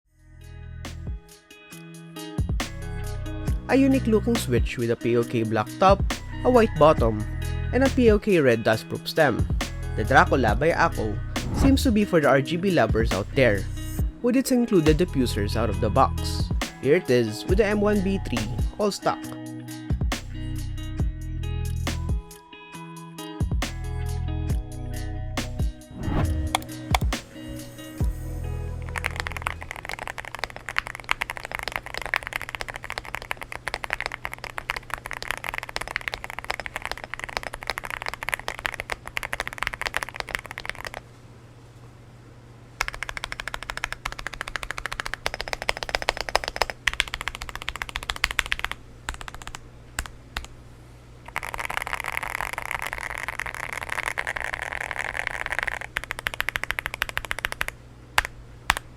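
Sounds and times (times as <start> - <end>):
mechanical keyboard key clacks: 28.8 - 41.0, 42.8 - 50.5, 51.3 - 58.9.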